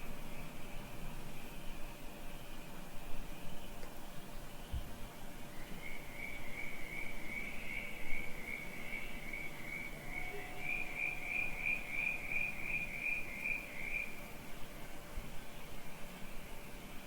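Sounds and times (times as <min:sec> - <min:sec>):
faint hum of night insects: 0:00.0 - 0:17.0
crickets chirping: 0:05.4 - 0:16.8.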